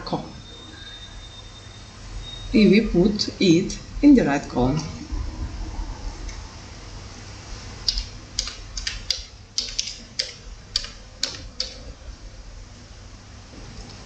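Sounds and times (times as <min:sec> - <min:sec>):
computer keyboard typing: 0:07.8 - 0:11.9.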